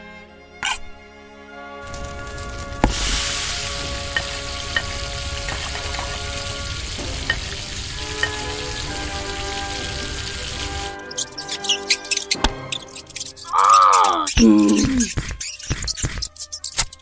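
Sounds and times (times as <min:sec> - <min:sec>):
background music: 0:00.0 - 0:15.4
steady hiss: 0:01.9 - 0:11.0.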